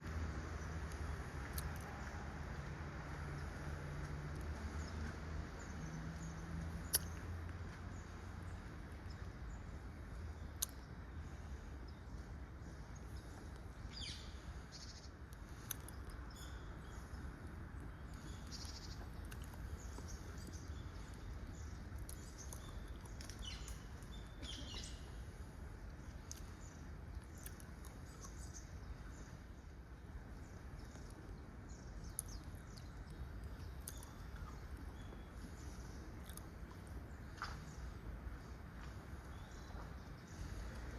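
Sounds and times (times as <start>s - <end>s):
low outdoor rumble: 0.0s - 40.9s
bird chirps and calls: 18.1s - 25.4s.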